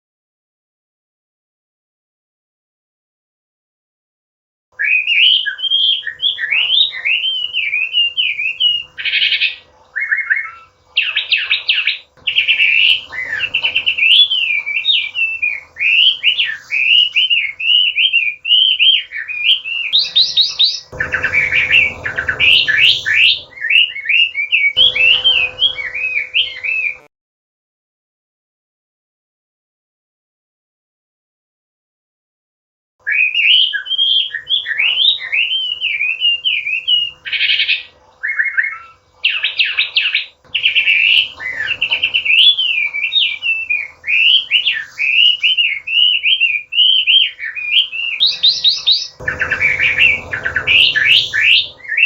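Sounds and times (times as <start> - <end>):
bird singing whistled phrases: 4.8 - 27.1, 33.0 - 52.0.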